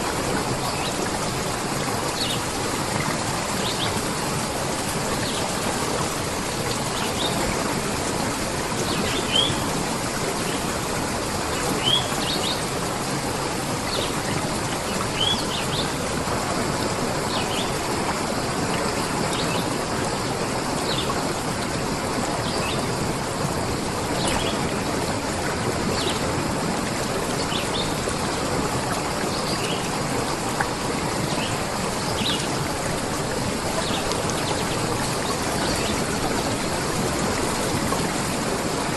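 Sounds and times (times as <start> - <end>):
stream water running: 0.0 - 38.9.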